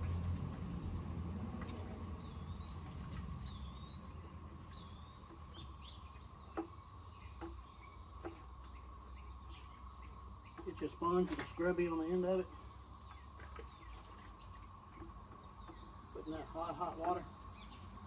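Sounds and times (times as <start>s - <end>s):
insect-like drone: 0.0s - 18.0s
bird chirping: 1.6s - 18.0s.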